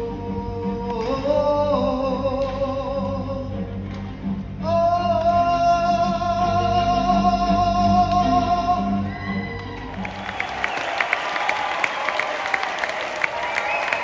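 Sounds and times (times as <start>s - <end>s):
singing: 0.0s - 10.4s.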